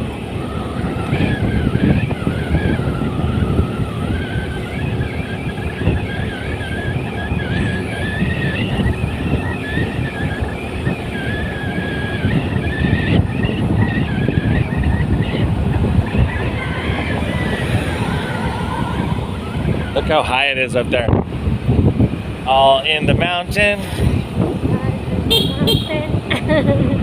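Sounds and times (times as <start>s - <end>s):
thin wavering whine: 0.0s - 21.2s
vehicle engine and road rumble: 0.0s - 27.0s.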